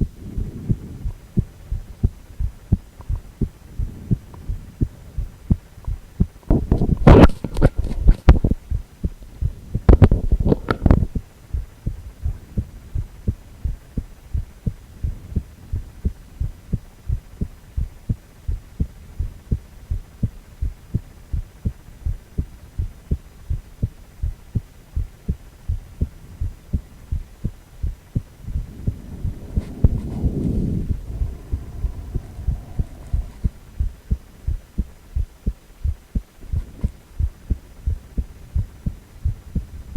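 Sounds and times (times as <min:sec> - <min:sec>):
heartbeat low thumps: 0:00.0 - 0:39.9
rough noise bursts: 0:27.7 - 0:35.3
whoosh: 0:28.4 - 0:34.6.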